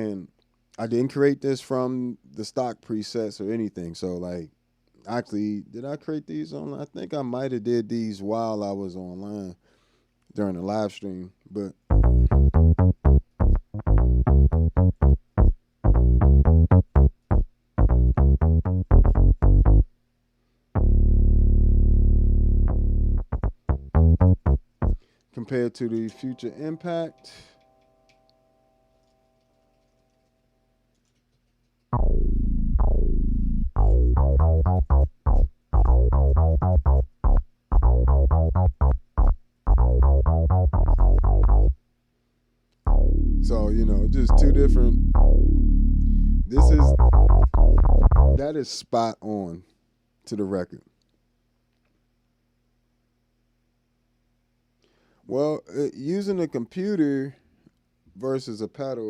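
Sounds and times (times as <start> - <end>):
held synth bass note: 11.9 - 19.9, 20.8 - 25.0, 32.0 - 41.8, 42.9 - 48.4
staccato synth bass notes: 11.9 - 19.9, 20.8 - 25.0, 32.0 - 41.8, 42.9 - 48.4.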